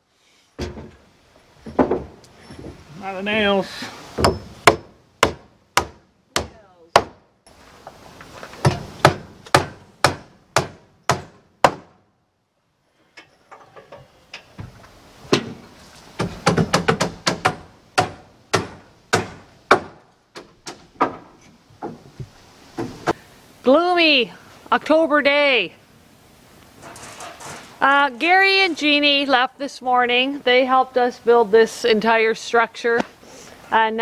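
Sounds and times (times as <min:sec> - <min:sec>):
hammer blows on wood: 0:04.1 - 0:07.2.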